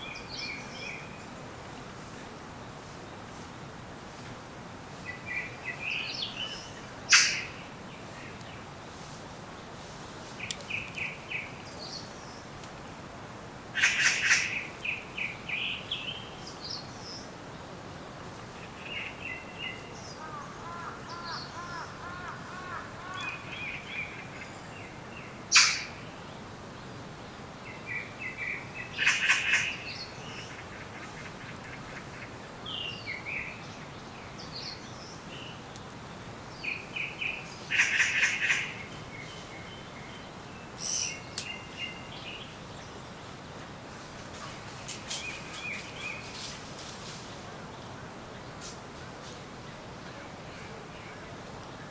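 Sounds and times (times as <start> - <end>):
birds chirping: 27.6 - 46.9
sharp loud bird notes: 39.7 - 42.4.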